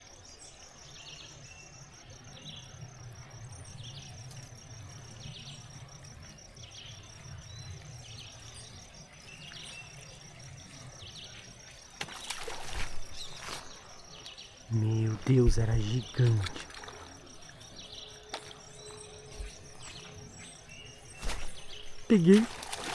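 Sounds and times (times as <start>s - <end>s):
water splashing: 12.0s - 14.0s, 15.5s - 19.9s, 21.1s - 22.9s
bird chirping: 12.4s - 22.9s
insect trilling: 14.6s - 22.9s.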